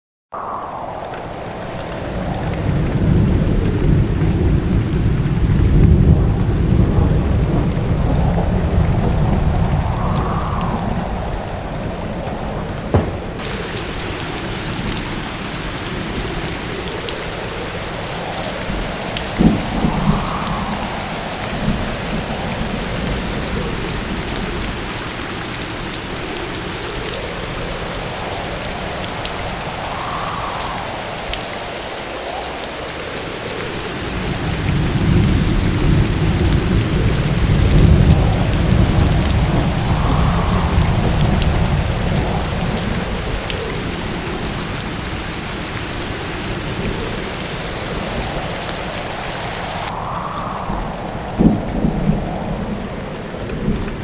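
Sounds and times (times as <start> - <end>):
thunder cracks: 0.4 - 11.3, 12.6 - 15.2, 49.8 - 53.9
deep thunder rumble: 0.4 - 15.4, 34.0 - 54.0
heavy rain: 0.4 - 54.0.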